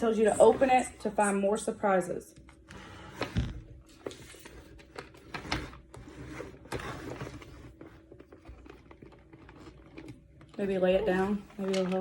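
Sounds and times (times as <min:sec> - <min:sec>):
plastic scraping rustles: 0:02.8 - 0:12.0.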